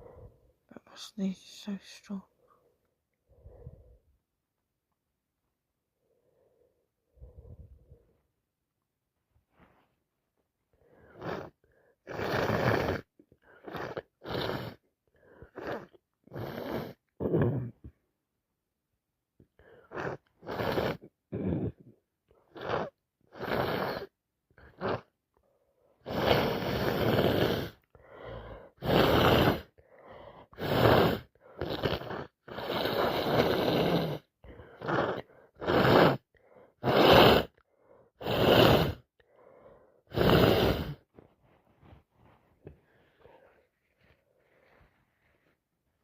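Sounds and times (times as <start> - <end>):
gasping in-breaths: 24.6 - 33.5, 34.2 - 36.8, 37.4 - 45.5.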